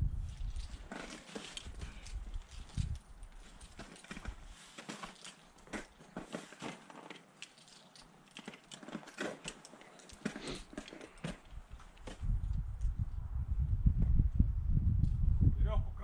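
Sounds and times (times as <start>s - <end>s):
climbing gear clicking on ice: 0.3s - 12.2s.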